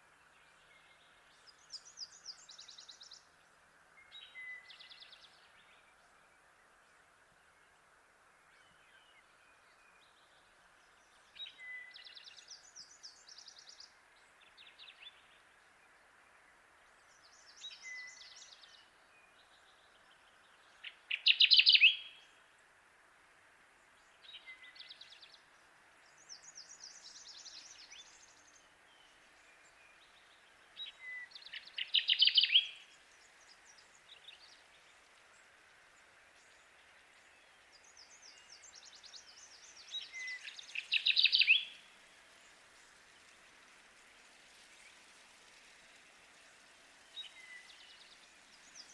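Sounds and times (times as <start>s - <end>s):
background hiss: 0.0s - 48.9s
faint high bird song: 0.0s - 48.9s.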